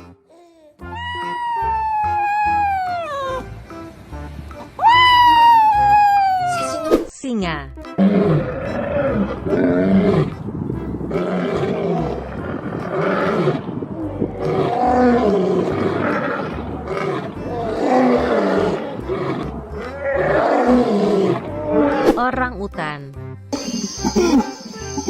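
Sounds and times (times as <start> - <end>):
lion roaring: 8.0 - 10.4, 11.0 - 22.0.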